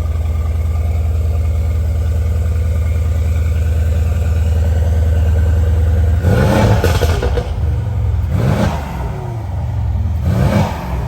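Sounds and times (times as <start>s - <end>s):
car engine idling and revving: 0.0s - 11.0s.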